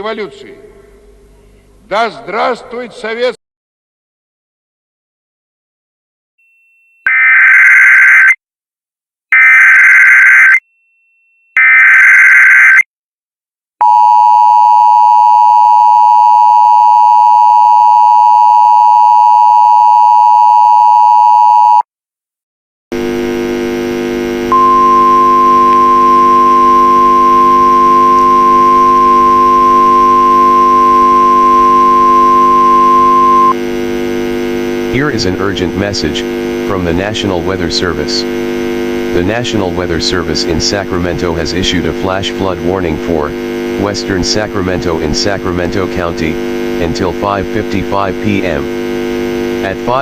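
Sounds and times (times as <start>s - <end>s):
screeching data bursts: 9.4s - 10.6s
long steady tone: 13.8s - 21.8s, 23.0s - 40.0s, 41.8s - 50.0s
steady hum: 23.0s - 50.0s
two-tone attention signal: 24.5s - 33.6s.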